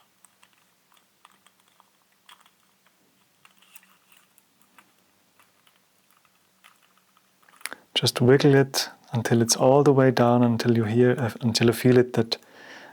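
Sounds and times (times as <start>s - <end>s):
plastic parts clicking and scraping: 0.0s - 7.9s.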